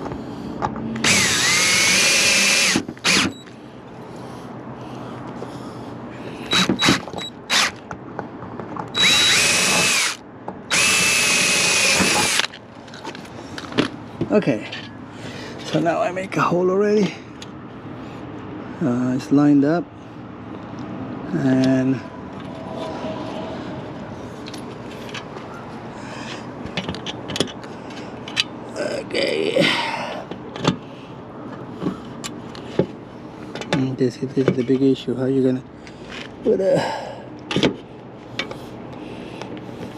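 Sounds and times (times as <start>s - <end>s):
steady background hum: 0.0s - 39.9s
electric drill motor whine: 1.0s - 3.4s, 6.5s - 7.8s, 9.0s - 12.5s.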